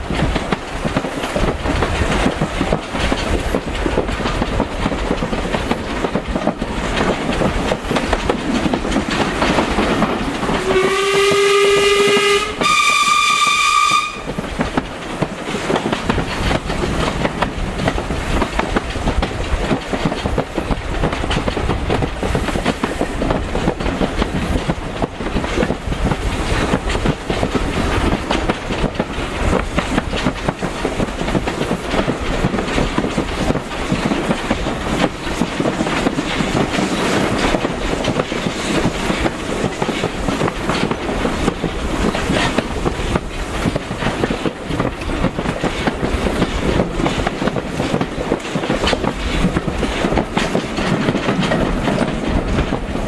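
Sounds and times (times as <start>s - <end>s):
train wheels rumbling: 0.0s - 53.0s
wheels clicking over rail joints: 0.0s - 53.0s.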